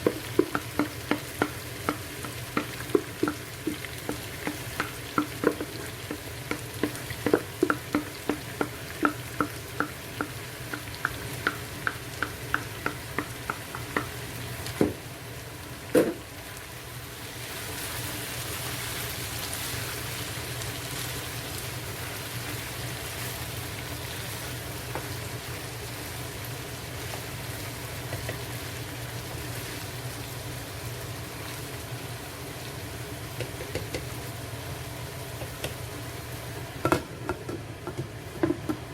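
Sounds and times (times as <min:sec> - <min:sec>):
spoon knocking against pot: 0:00.0 - 0:14.1
chicken frying sizzle: 0:00.0 - 0:38.9.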